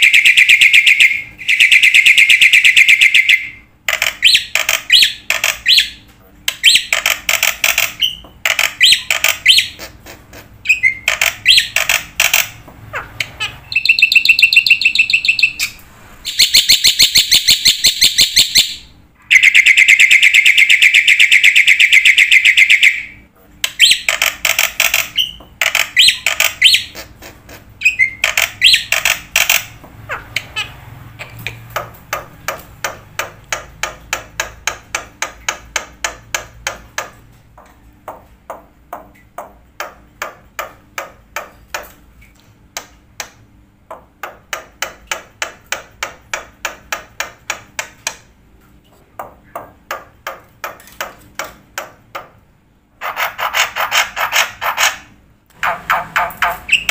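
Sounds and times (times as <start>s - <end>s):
bird chirping and trilling: 0.0s - 34.6s, 55.6s - 56.9s.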